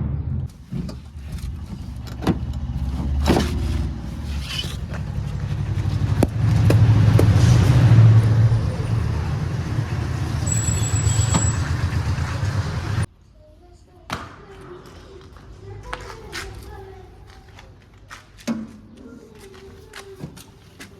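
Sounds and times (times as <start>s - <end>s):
diesel engine working: 0.0s - 13.1s.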